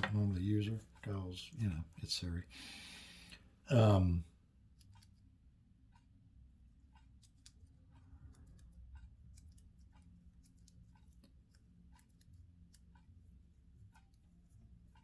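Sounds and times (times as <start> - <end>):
faint room hum: 0.0 - 15.0.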